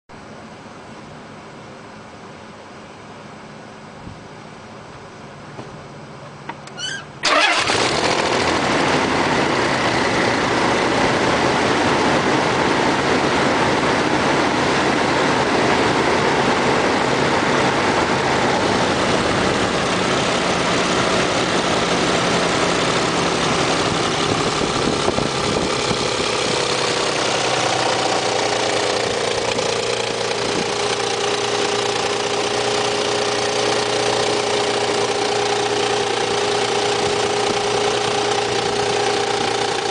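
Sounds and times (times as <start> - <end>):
car engine idling: 6.3 - 39.9.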